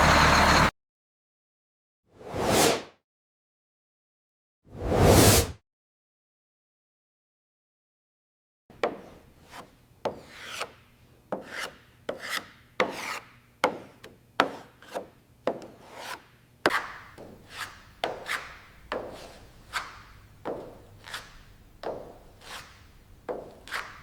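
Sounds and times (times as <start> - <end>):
rasping scraping strokes: 15.9 - 24.0.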